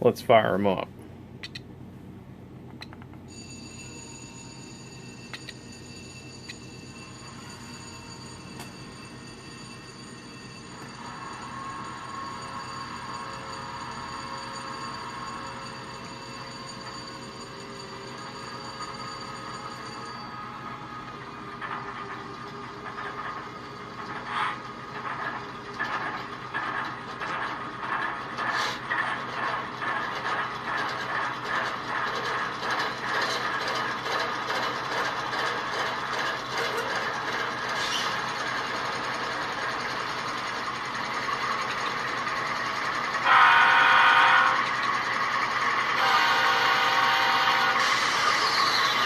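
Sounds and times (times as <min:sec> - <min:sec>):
diesel engine sounds through small speakers: 0:10.6 - 0:49.0
loud horn blast: 0:43.2 - 0:44.7, 0:46.0 - 0:48.1.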